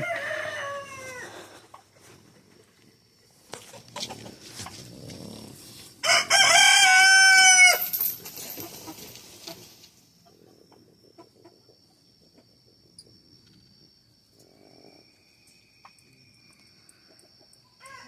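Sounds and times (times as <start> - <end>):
rooster crowing: 0.0 - 1.5, 6.0 - 8.0, 17.8 - 18.0
poultry clucking: 3.4 - 5.2, 8.6 - 12.7.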